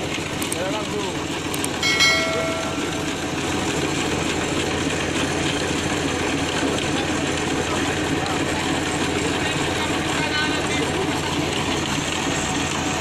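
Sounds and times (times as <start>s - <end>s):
boring machine running: 0.0s - 13.0s
metallic clang ringing: 1.8s - 3.4s.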